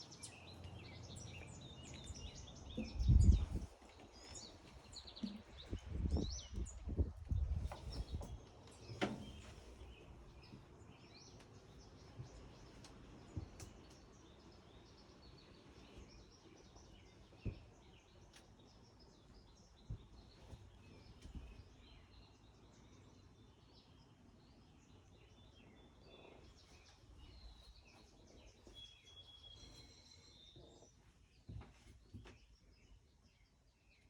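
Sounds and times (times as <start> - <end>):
faint background noise: 0.0 - 34.0
small birds chirping: 0.0 - 34.0
low rumbling bumps: 1.1 - 8.4.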